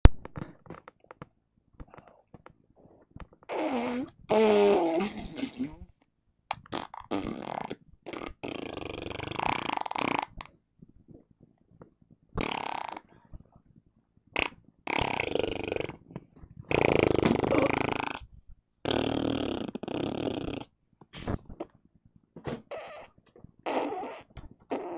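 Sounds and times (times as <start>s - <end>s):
person making fart noises: 0.0s - 2.5s, 3.3s - 5.9s, 6.5s - 10.5s, 12.4s - 13.1s, 14.4s - 16.1s, 16.7s - 21.7s, 22.5s - 24.9s.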